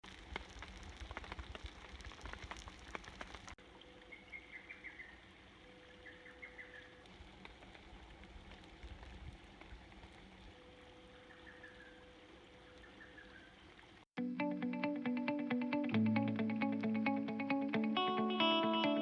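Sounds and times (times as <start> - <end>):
rain pattering: 0.0 - 5.6, 6.3 - 11.6
light rain: 0.0 - 14.1
bird chirping: 4.1 - 5.2.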